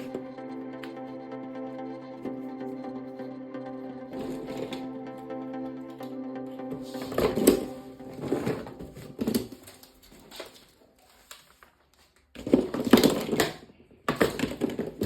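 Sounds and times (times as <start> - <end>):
plastic toy parts clattering: 12.4 - 15.0.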